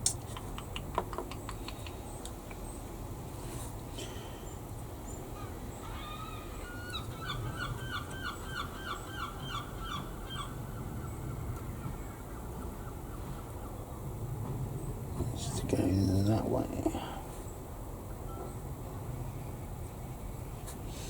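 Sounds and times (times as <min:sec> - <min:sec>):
bird calling: 0:04.1 - 0:14.0
low room hum: 0:14.6 - 0:17.7.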